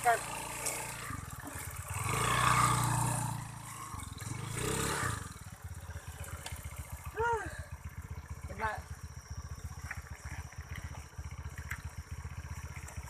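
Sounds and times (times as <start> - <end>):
small motorcycle engine revving: 0.0 - 13.0.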